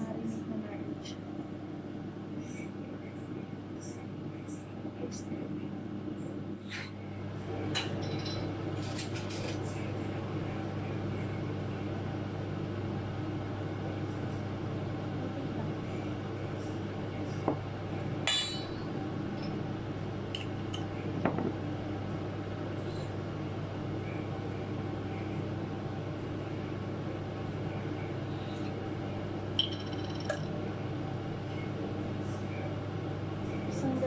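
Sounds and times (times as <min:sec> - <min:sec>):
steady low hum: 0:00.0 - 0:34.0
dishes clinking: 0:07.7 - 0:09.6, 0:18.3 - 0:19.6, 0:29.6 - 0:30.5.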